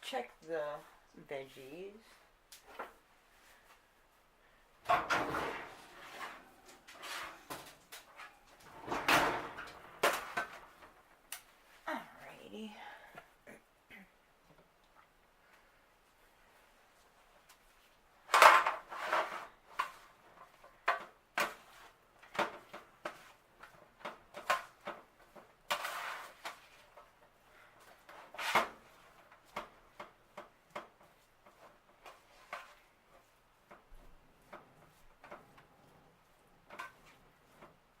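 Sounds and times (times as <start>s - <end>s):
utensils knocking and scraping pan: 4.9s - 11.0s, 22.3s - 27.0s.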